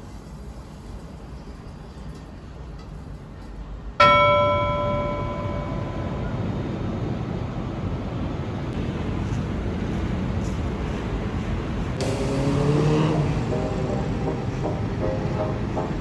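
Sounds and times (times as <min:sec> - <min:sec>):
bell-like ding: 0:04.0 - 0:06.4
steady background rumble: 0:04.6 - 0:16.0.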